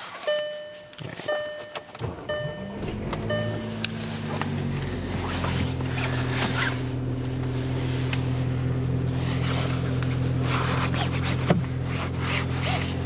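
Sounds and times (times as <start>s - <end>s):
car engine idling: 0.9s - 13.0s
rubbing and scraping: 3.9s - 13.0s.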